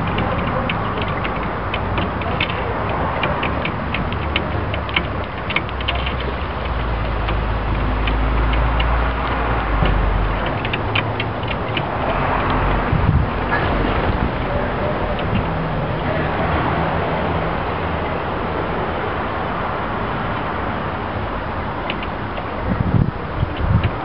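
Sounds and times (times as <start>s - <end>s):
beaks tapping on glass: 0.0s - 12.6s.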